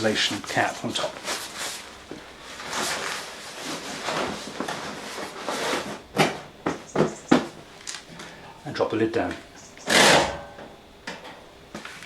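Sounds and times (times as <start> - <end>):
scraping and rustling: 0.3 - 8.1.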